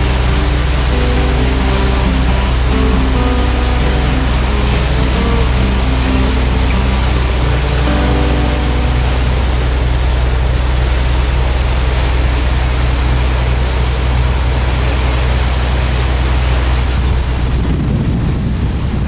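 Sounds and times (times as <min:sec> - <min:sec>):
boat engine droning: 0:00.0 - 0:19.0
water rushing: 0:00.0 - 0:19.0
wind: 0:00.0 - 0:19.0.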